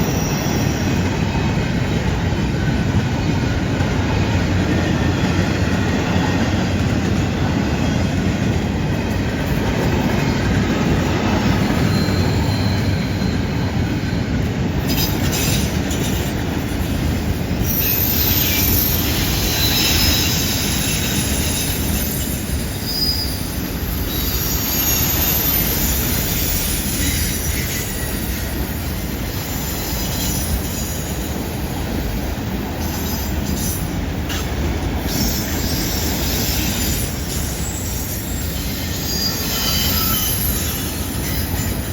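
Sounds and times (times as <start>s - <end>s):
train wheels rumbling on rail: 0.0s - 41.9s
high-pitched wheel squeal: 11.6s - 13.7s, 17.6s - 28.6s, 35.1s - 41.9s.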